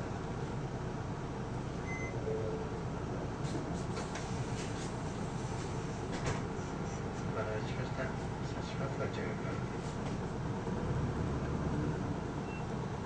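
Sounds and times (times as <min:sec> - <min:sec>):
bus diesel engine and road rumble: 0:00.0 - 0:13.0
high beep: 0:01.8 - 0:02.7.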